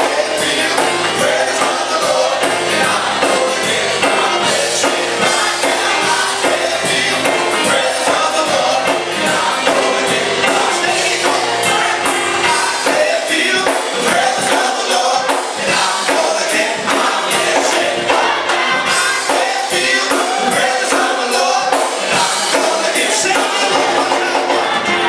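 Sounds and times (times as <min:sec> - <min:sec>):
steady percussion beat: 0:00.0 - 0:25.0
voices singing together: 0:00.0 - 0:25.0.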